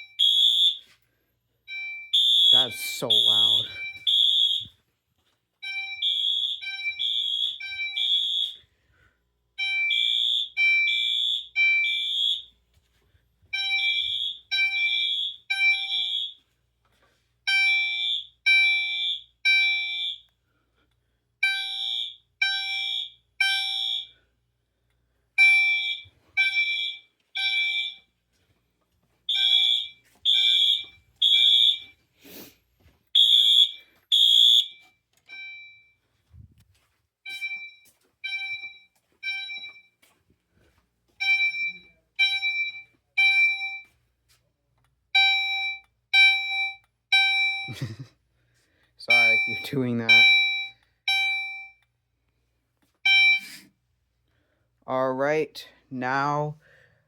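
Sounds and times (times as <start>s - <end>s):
alarm horn blasts: 2.2s - 4.7s, 21.4s - 24.1s, 29.3s - 31.9s.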